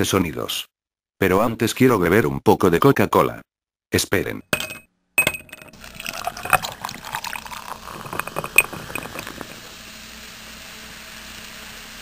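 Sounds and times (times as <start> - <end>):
glass clinks: 4.6 - 9.4
beer pouring into a glass: 5.8 - 9.8
beer foam hissing: 5.8 - 12.0.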